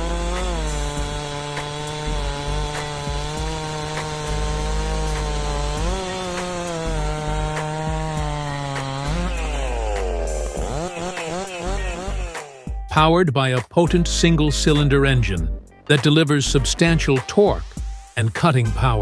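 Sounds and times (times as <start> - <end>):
chainsaw running under load: 0.0 - 12.6.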